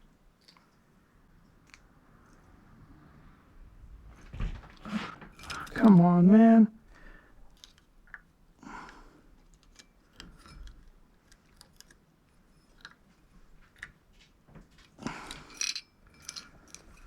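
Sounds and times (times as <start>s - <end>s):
small parts clicking: 7.5s - 8.3s, 15.2s - 17.0s.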